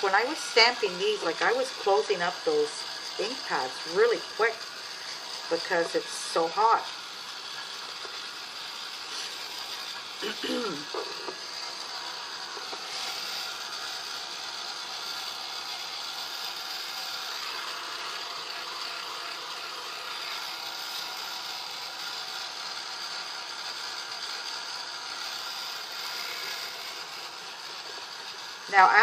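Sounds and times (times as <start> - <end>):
electric blower motor whirring: 0.0 - 29.0.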